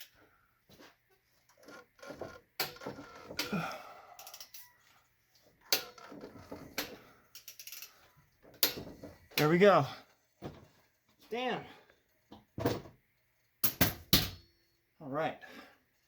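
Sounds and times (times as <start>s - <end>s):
tools being handled: 4.2s - 9.6s.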